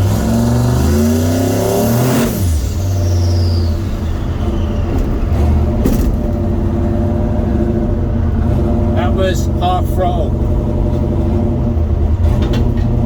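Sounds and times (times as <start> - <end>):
truck engine revving: 0.0 - 13.0
turbocharger whistle: 1.4 - 5.6.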